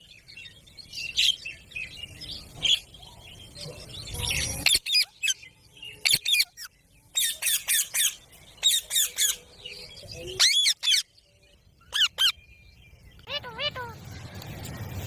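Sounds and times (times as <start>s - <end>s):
parrot squawking and chirping: 4.4s - 5.4s, 6.0s - 9.4s, 10.4s - 11.1s, 11.9s - 12.4s, 13.2s - 14.1s.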